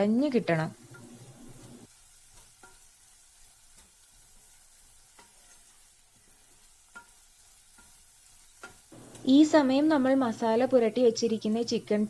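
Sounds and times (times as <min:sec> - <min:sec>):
food sizzling in a pan: 0:00.0 - 0:12.0
spoon clicking against a pan: 0:02.3 - 0:02.9, 0:03.7 - 0:04.0, 0:05.1 - 0:05.6, 0:06.9 - 0:08.0, 0:08.6 - 0:09.2.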